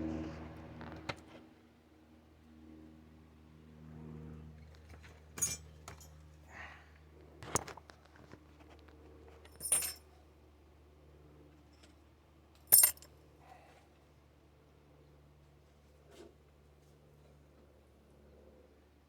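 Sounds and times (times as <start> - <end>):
metal parts clinking: 5.4 - 5.6, 9.5 - 10.0, 12.7 - 13.0.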